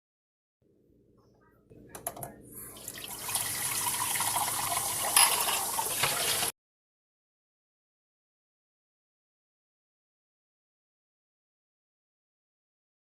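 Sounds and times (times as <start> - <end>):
water running from faucet: 2.7 - 6.5
water tap clicks: 4.8 - 6.5.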